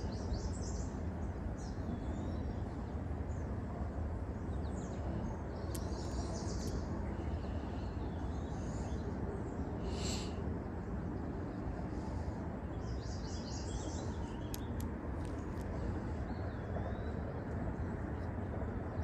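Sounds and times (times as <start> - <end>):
low outdoor rumble: 0.0 - 19.0
small birds chirping: 4.5 - 10.8, 11.5 - 17.9.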